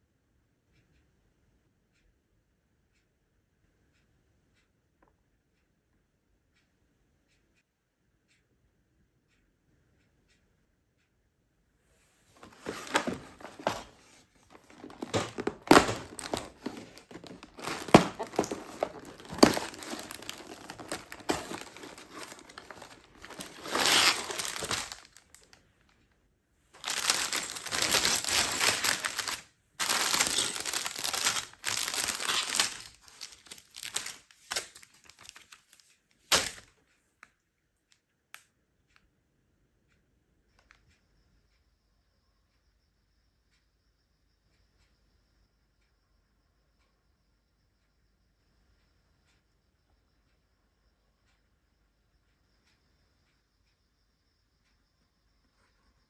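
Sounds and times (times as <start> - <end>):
packaging crinkling and tearing: 12.4 - 25.4, 26.8 - 36.6
packaging rustling: 12.4 - 25.5, 26.8 - 36.6.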